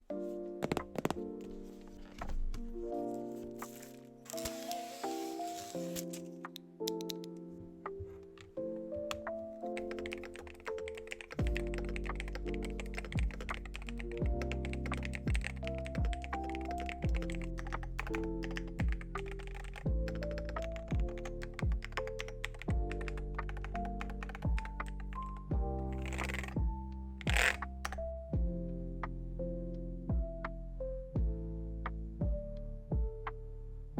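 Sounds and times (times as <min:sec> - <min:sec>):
fast keyboard typing: 0:09.1 - 0:28.0.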